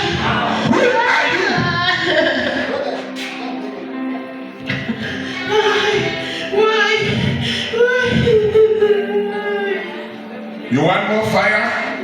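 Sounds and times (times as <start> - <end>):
low pulsing accompaniment: 0.0 - 12.0.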